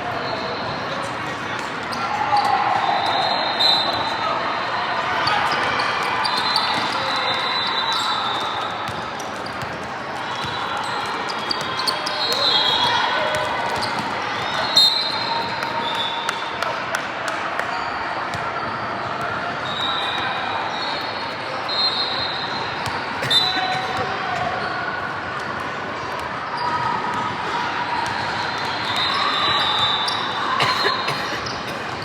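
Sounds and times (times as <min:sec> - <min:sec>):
sneaker squeaks on floor: 0:05.2 - 0:16.4, 0:19.6 - 0:24.1, 0:28.6 - 0:32.0.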